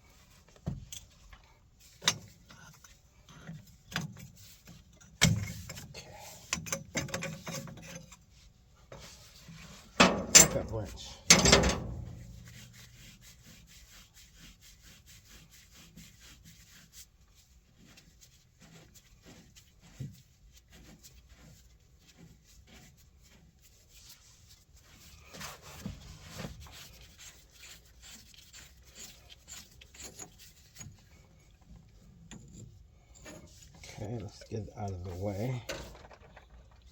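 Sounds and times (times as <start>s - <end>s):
metal knocks: 11.3s - 12.4s.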